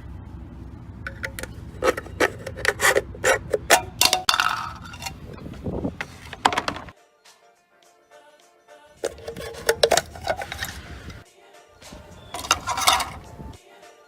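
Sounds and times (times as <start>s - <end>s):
sharp scrapes and clicks: 1.1s - 5.2s, 9.0s - 11.2s.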